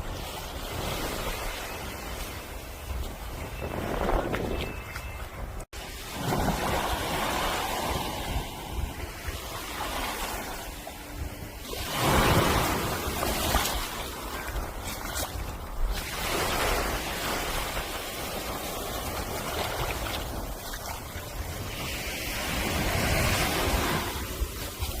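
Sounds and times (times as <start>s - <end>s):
wind rumbling on microphone: 0.0s - 25.0s
surf washing up a beach: 5.8s - 25.0s.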